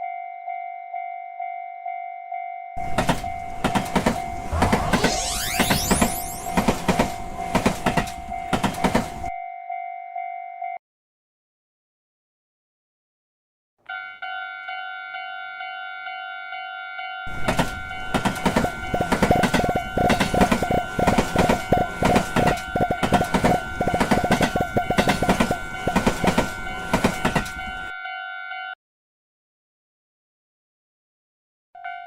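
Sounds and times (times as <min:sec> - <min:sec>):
railroad crossing bell ringing: 0:00.0 - 0:04.6, 0:05.6 - 0:10.8, 0:13.9 - 0:28.8
train wheels clattering over rails: 0:02.8 - 0:04.8, 0:05.7 - 0:09.4, 0:17.3 - 0:27.9.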